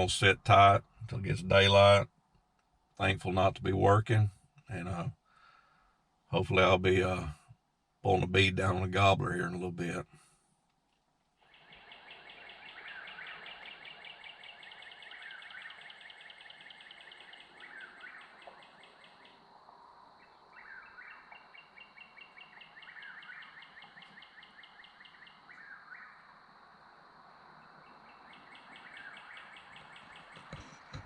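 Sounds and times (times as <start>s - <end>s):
bird calling: 11.4s - 26.4s, 27.4s - 31.0s.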